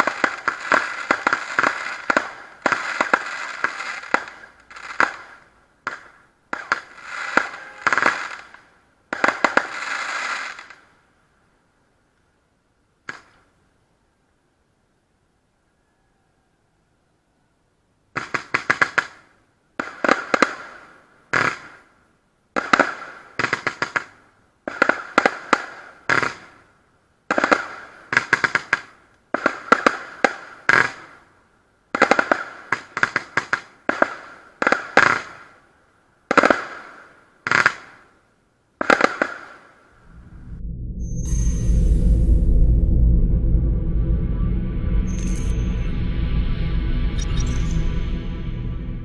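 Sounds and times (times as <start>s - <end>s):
fireworks bangs: 0.0s - 10.8s
music: 40.4s - 49.0s.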